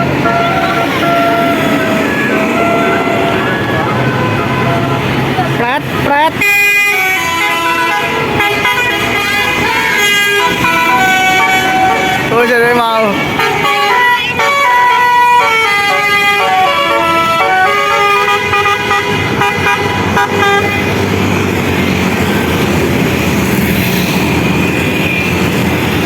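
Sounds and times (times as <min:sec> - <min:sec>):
bus engine and tyres: 0:00.0 - 0:26.0
musical air horn tune: 0:06.4 - 0:12.4, 0:13.2 - 0:20.9.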